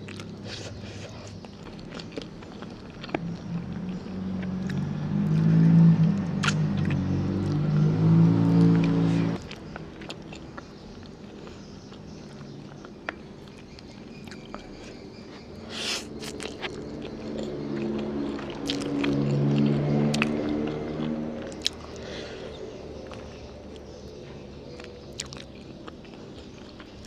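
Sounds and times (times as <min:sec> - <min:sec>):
chewing and biting noodles: 0:08.8 - 0:22.1, 0:22.8 - 0:27.0.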